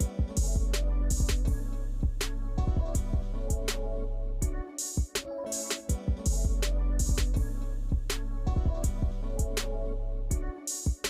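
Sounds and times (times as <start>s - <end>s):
drums: 0.0s - 3.8s, 4.4s - 9.7s, 10.3s - 11.0s
sustained bass: 0.4s - 4.6s, 6.3s - 10.5s.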